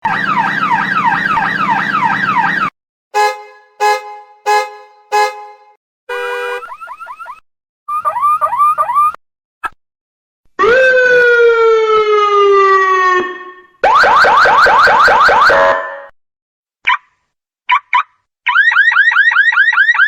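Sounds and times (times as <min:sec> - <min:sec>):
car alarm siren: 0:00.0 - 0:05.7, 0:06.4 - 0:09.2, 0:10.6 - 0:16.1, 0:17.9 - 0:20.0.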